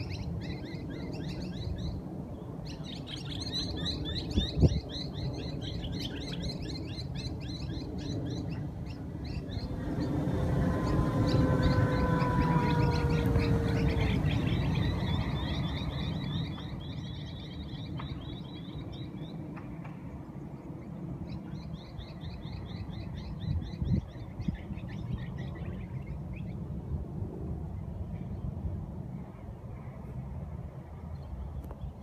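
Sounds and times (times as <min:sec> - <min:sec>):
small birds chirping trills: 0:00.0 - 0:19.5
model plane motor whining: 0:09.7 - 0:16.2.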